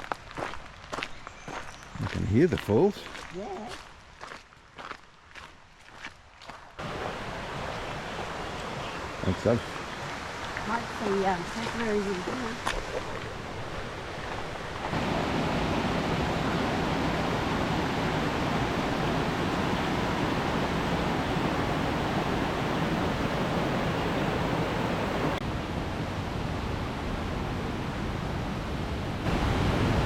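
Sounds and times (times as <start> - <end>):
waterfall rushing: 6.8 - 28.0, 29.2 - 30.0.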